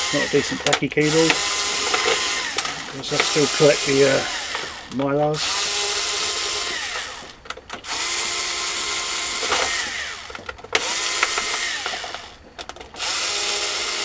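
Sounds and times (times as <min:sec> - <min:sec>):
short clicks: 0:00.0 - 0:08.3
cordless drill motor whine: 0:00.0 - 0:14.0.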